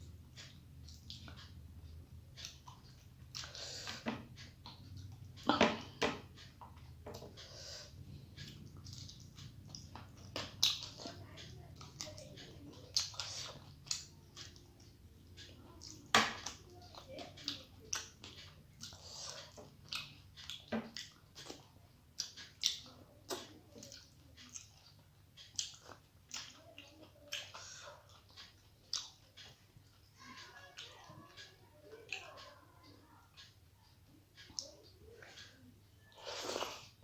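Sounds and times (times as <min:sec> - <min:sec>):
chewing and mouth smacks: 0:08.4 - 0:11.2, 0:11.8 - 0:15.0, 0:15.8 - 0:30.0, 0:36.1 - 0:37.0.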